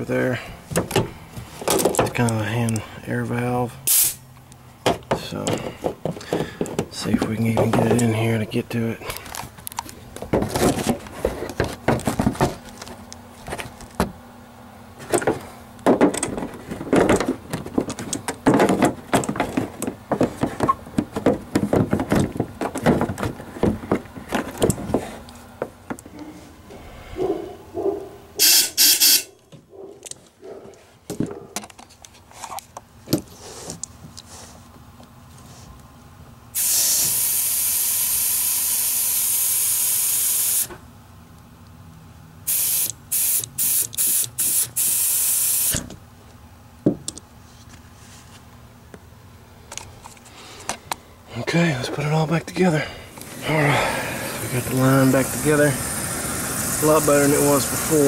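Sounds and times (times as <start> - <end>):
air hissing through drain line: 3.9 - 4.2, 28.4 - 29.3, 36.6 - 40.7, 42.5 - 45.8, 53.2 - 58.0
short hissing blast: 3.9 - 4.2, 28.4 - 29.3, 36.6 - 38.5.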